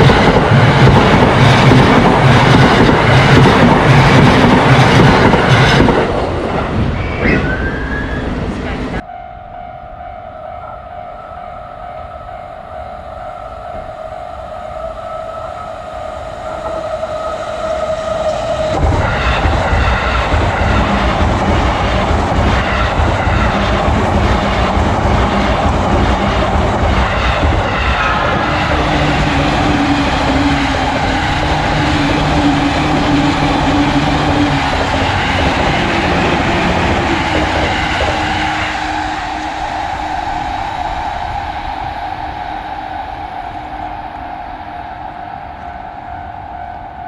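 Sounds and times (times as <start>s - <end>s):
train passing with rail noise: 0.0s - 47.0s
railroad crossing bell ringing: 16.3s - 42.3s.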